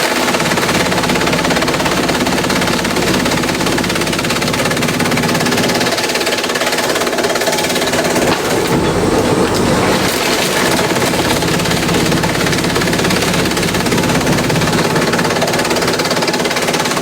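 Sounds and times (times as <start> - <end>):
bamboo shredder rattling: 0.0 - 17.0.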